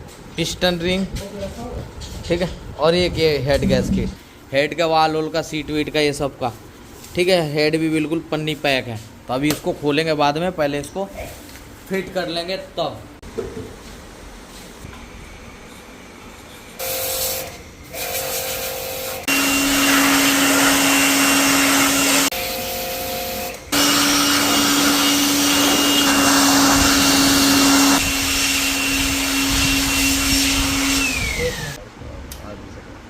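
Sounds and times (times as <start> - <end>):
electric machine humming and hissing: 14.8 - 31.8.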